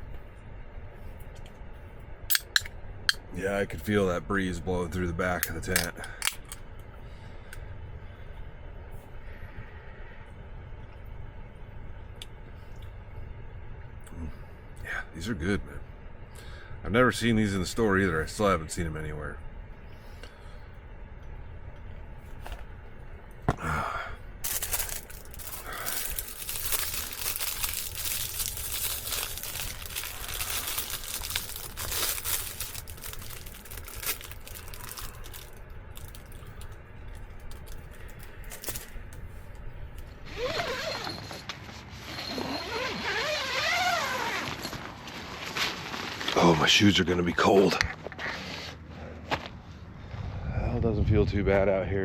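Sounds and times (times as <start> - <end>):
fabric and plastic rustling: 24.4 - 46.6.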